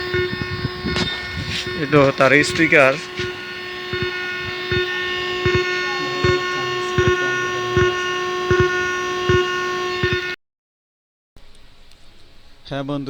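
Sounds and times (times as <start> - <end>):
loudspeaker whine: 0.0 - 10.4.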